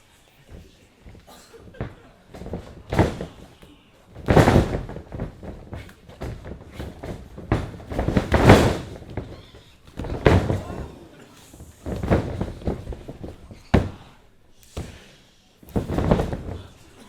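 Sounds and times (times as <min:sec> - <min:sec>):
bodies slamming onto wrestling ring: 0:01.1 - 0:11.0, 0:11.8 - 0:14.1, 0:15.7 - 0:16.9.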